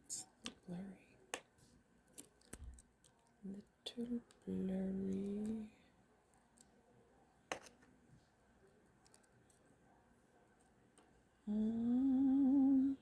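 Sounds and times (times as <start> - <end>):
person humming: 11.4 - 13.0.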